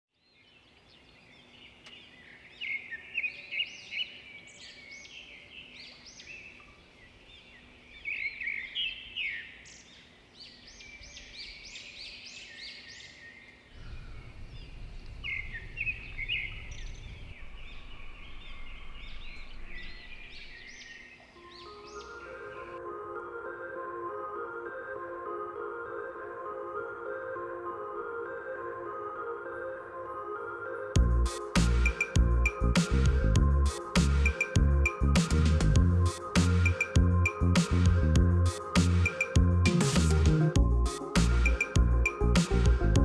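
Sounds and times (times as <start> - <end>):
small birds chirping and singing: 0.1 - 22.8, 31.0 - 43.0
low rumble: 13.8 - 20.7.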